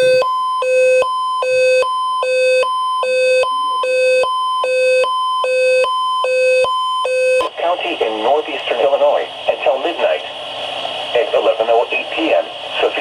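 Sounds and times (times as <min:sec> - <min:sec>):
two-tone electronic alert signal: 0:00.0 - 0:07.5.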